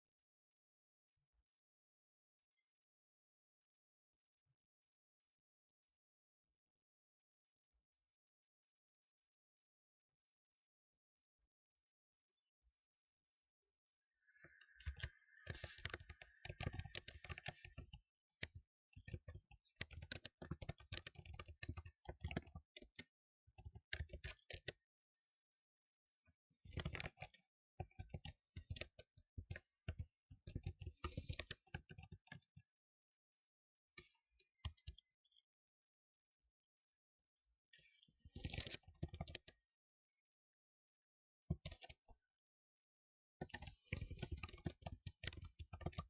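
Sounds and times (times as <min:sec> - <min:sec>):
typing on keyboard: 0:14.5 - 0:24.8, 0:26.7 - 0:32.5, 0:38.4 - 0:39.6, 0:43.4 - 0:46.0.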